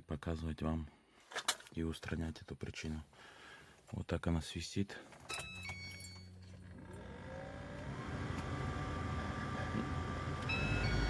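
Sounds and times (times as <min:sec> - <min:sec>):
heater fan motor whine: 0:06.7 - 0:11.0.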